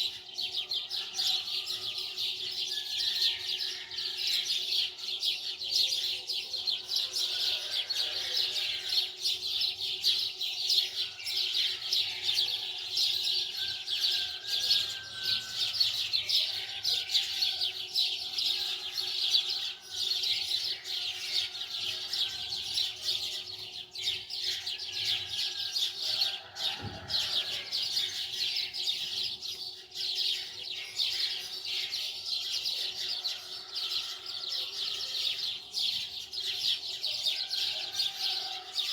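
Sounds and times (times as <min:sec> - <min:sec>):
small birds chirping: 0:00.0 - 0:03.2.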